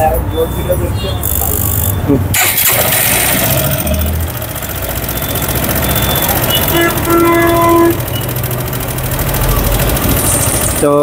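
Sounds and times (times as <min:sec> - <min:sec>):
motorcycle engine idling: 0:02.4 - 0:11.0
horn-like tone: 0:06.1 - 0:08.3.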